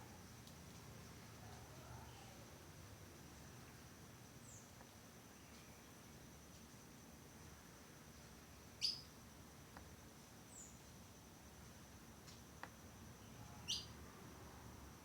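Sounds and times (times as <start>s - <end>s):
small bird chirping: 8.8s - 9.1s, 13.6s - 14.0s.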